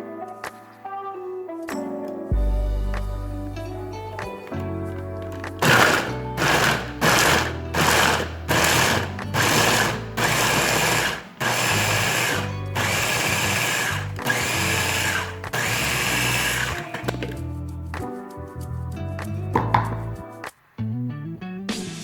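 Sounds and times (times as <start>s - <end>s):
background music: 0.0s - 22.0s
kitchen appliance motor: 5.6s - 17.2s.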